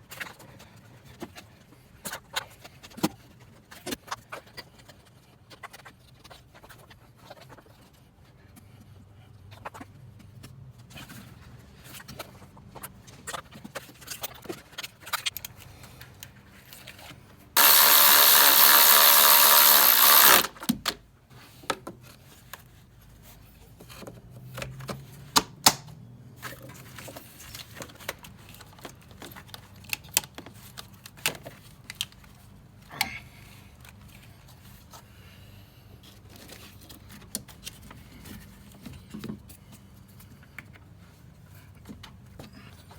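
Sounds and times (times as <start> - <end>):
hand tools and metal parts clinking: 17.6 - 20.5
power tool running: 17.6 - 20.6.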